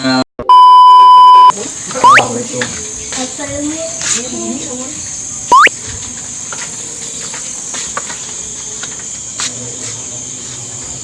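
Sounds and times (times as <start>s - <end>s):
upward sweeping whistle: 0.5s - 2.2s, 5.5s - 5.7s
crickets and insects chirring: 1.5s - 11.0s.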